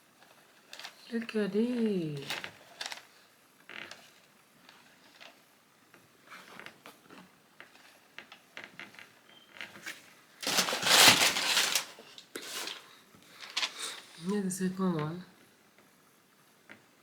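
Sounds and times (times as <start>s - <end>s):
loud packaging paper rustle: 2.2s - 3.1s, 9.8s - 14.2s
packaging rustles and taps: 2.2s - 3.1s, 9.6s - 13.8s.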